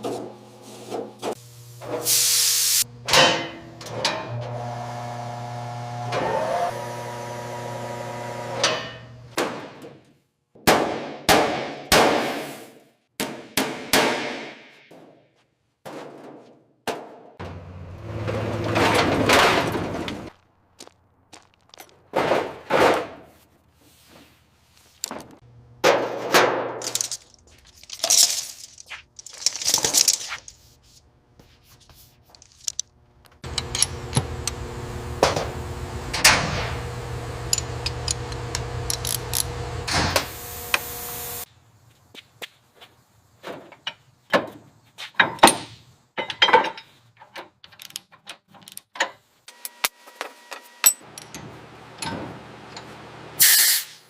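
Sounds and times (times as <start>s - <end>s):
power tool humming: 4.3s - 9.2s, 33.4s - 41.5s.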